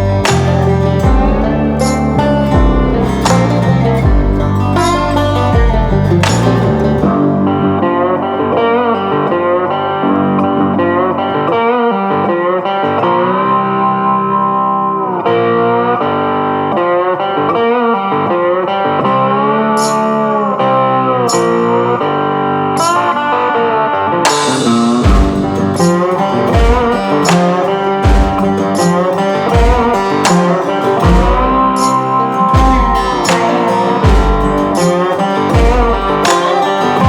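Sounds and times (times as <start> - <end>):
drum hits: 0.0 - 1.6, 2.5 - 6.6, 24.3 - 31.9, 32.6 - 36.6
electric guitar music: 0.0 - 37.0.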